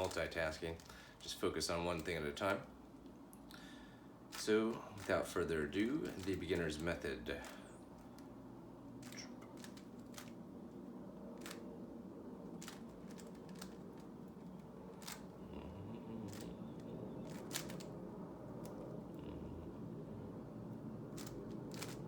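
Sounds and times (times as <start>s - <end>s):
steady low hum: 0.0s - 22.0s
plastic cube clicking: 9.0s - 10.4s, 12.6s - 14.0s, 17.2s - 18.0s, 21.2s - 22.0s.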